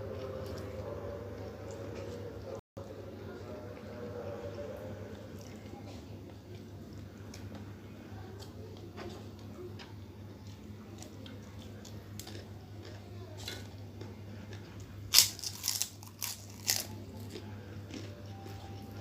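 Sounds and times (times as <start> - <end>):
chewing with wet clicks: 8.4 - 19.0
loud crunches of crackers bitten: 14.8 - 18.1.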